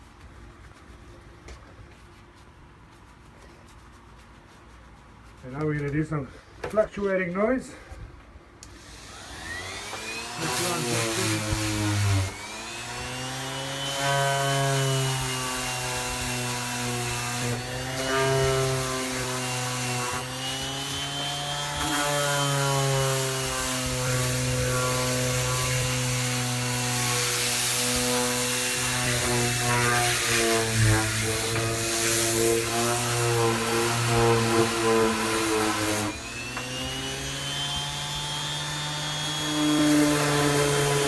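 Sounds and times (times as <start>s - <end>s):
electric sander running: 8.8s - 41.0s.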